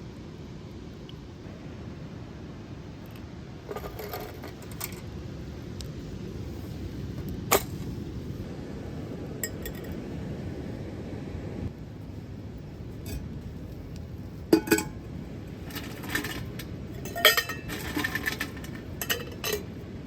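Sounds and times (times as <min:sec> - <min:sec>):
steady low rumble: 0:00.0 - 0:20.0
small hard objects clinking: 0:15.6 - 0:19.7.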